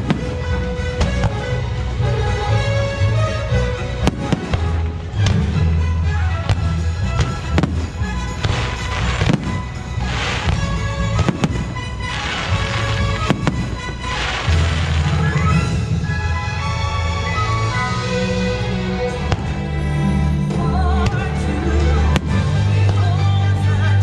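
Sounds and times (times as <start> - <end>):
fireworks crackling: 0.0 - 2.2, 3.9 - 19.7
fireworks bangs: 4.0 - 5.6, 6.4 - 16.2.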